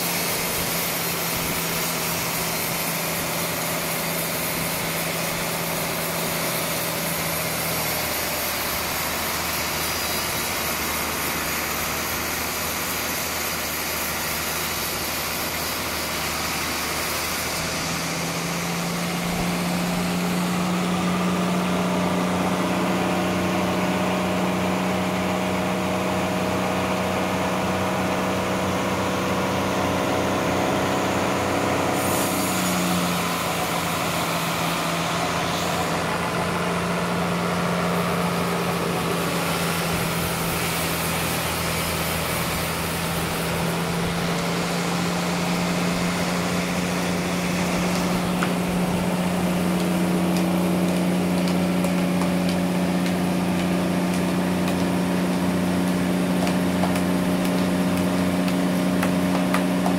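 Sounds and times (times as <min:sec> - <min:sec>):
sawmill machinery running: 0:00.0 - 0:59.9.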